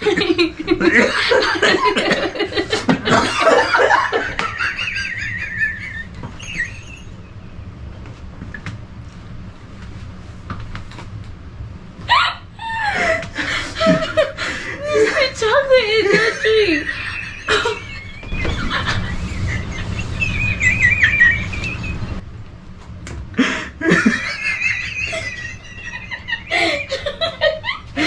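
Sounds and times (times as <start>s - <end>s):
people laughing: 0.0s - 7.2s, 12.1s - 22.2s, 23.4s - 28.0s
voices: 12.0s - 22.2s.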